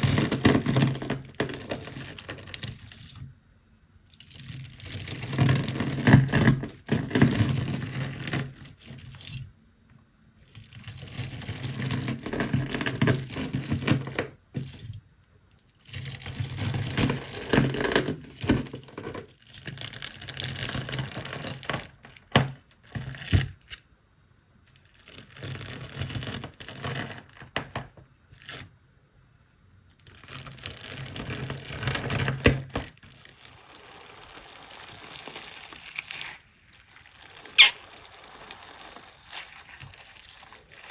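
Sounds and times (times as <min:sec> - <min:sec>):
crunchy slime crackling and popping: 0:33.0 - 0:40.9.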